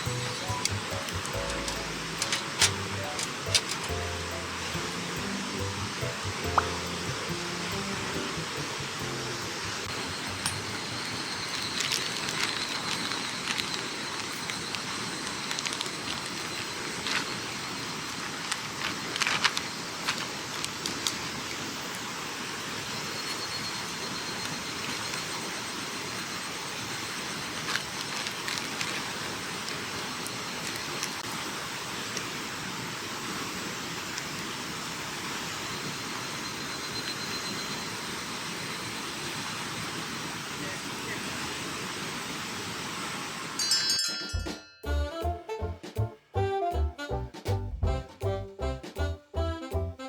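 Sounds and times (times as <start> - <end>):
small clicks: 0.2 - 4.0.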